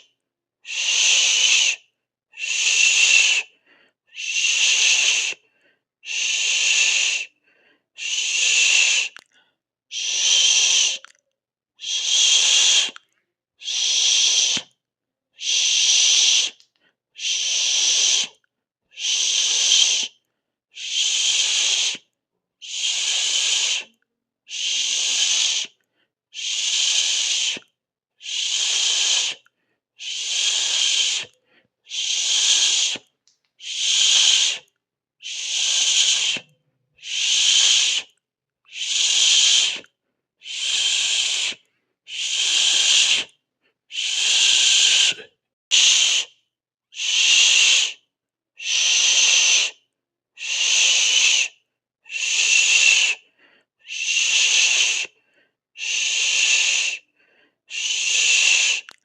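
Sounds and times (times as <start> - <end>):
shushing hiss: 13.7 - 14.6, 17.2 - 18.3, 20.8 - 22.0, 22.7 - 23.9, 24.5 - 25.8, 26.4 - 27.6, 28.2 - 29.4, 30.0 - 31.3, 31.9 - 33.0, 33.6 - 34.6, 35.2 - 36.4, 37.0 - 38.1, 38.8 - 39.8, 40.5 - 43.3, 44.0 - 46.3, 52.2 - 53.2, 53.9 - 55.1, 55.8 - 57.0, 57.7 - 58.9.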